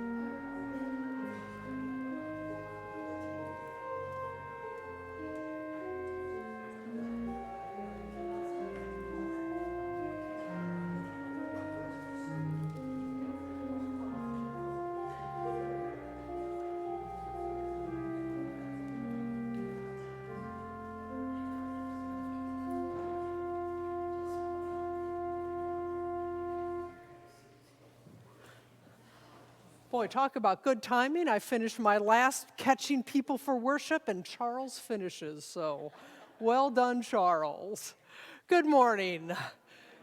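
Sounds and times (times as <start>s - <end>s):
organ playing sustained chords: 0.0s - 27.6s.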